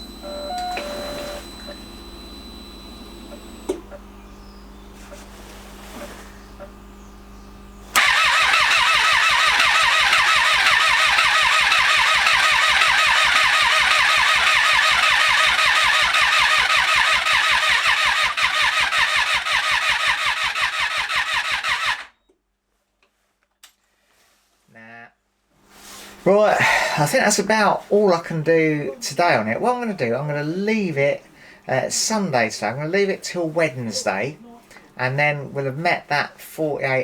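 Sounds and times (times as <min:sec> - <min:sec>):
starter motor cranking engine: 0:07.9 - 0:22.1.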